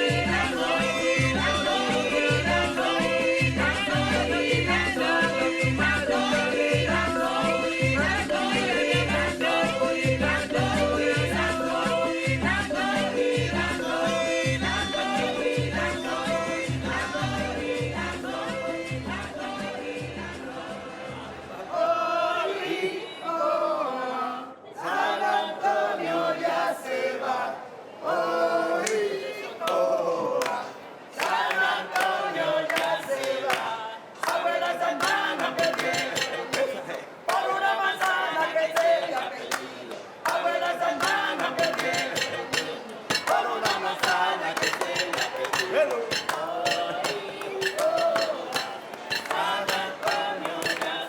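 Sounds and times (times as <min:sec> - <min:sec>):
voices singing together: 0:00.0 - 0:51.0
sharp irregular knocks and clinks: 0:35.0 - 0:36.6, 0:41.0 - 0:51.0
person singing: 0:40.4 - 0:51.0.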